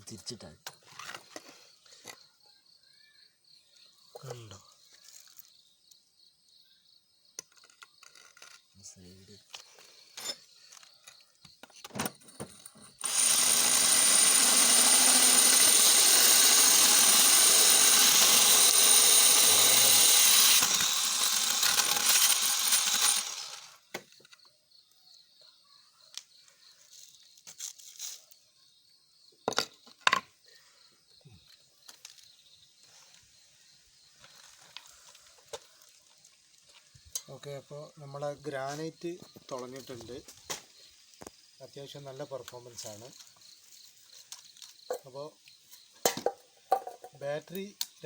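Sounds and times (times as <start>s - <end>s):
hammer drill boring into stone: 12.9s - 24.0s.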